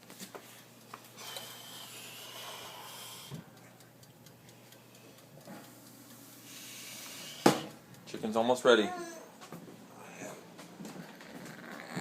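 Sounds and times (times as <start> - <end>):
child breathing heavily: 0.5 - 3.5.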